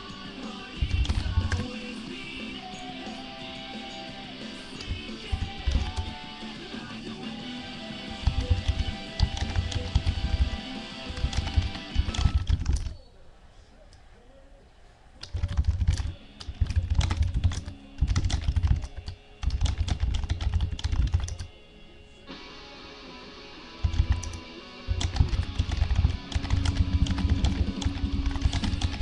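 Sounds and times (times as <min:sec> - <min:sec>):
keyboard typing clicks: 0:00.8 - 0:01.8, 0:04.8 - 0:06.2, 0:08.1 - 0:13.0, 0:15.2 - 0:21.5, 0:23.8 - 0:29.0.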